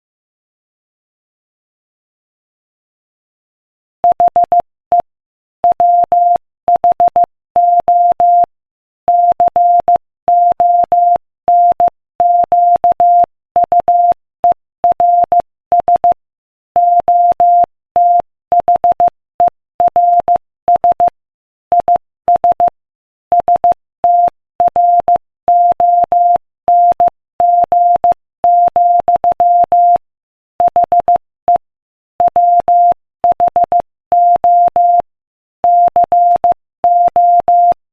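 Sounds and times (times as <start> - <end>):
morse code beeps: 4.0 - 5.0, 5.7 - 8.5, 9.1 - 14.2, 14.9 - 16.2, 16.8 - 19.1, 19.9 - 21.2, 21.8 - 22.7, 23.4 - 30.0, 32.2 - 37.8.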